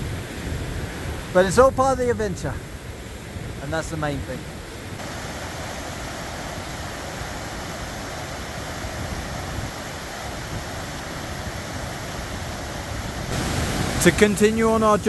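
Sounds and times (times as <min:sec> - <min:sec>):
river rushing: 0:03.0 - 0:15.0.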